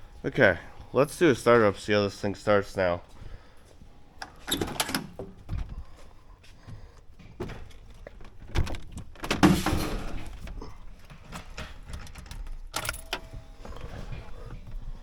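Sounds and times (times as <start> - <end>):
person climbing into cab: 3.1 - 15.0
truck door opening and shutting: 4.1 - 6.1, 7.3 - 15.0.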